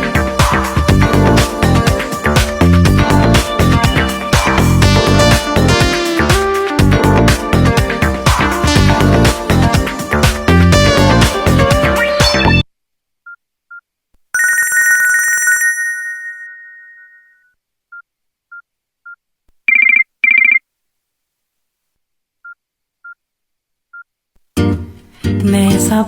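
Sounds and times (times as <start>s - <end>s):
trilling bell ring: 14.4s - 17.5s
short high ringtone beeps: 14.4s - 17.6s.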